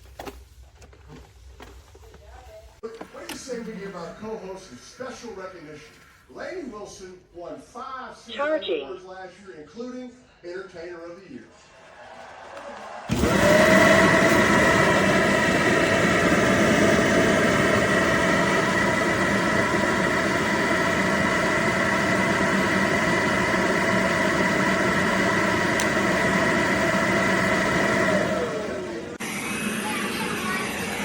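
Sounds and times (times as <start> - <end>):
robot vacuum motor whirring: 13.1 - 31.0.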